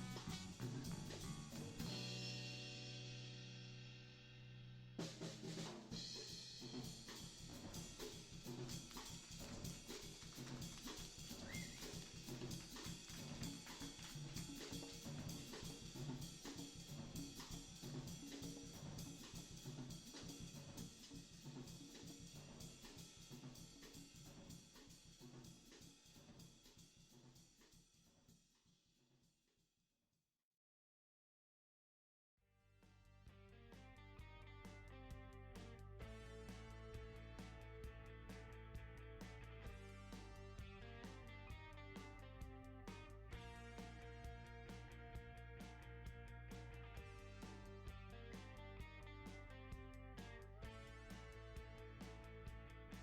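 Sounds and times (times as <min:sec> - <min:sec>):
drum kit beat: 0:00.0 - 0:03.6, 0:05.0 - 0:26.8, 0:35.6 - 0:53.0.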